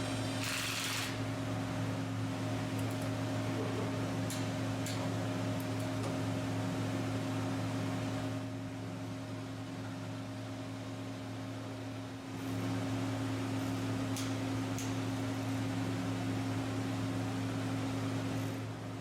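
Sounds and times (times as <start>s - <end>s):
low machine hum with tones: 0.0s - 19.0s.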